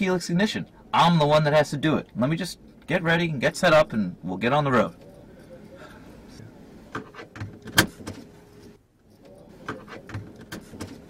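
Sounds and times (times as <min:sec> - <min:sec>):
faint steady tone: 0:02.0 - 0:07.0.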